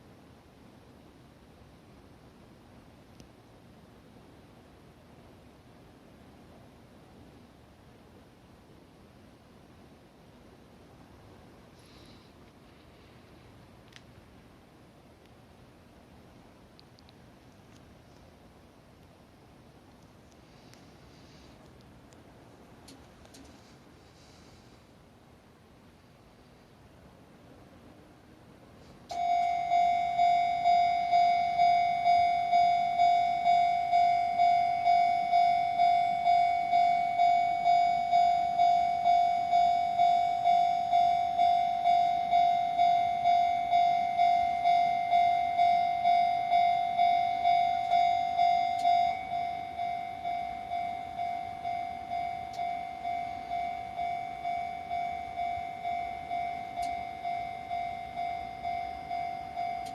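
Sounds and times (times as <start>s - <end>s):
level crossing bell dinging: 29.1s - 59.9s.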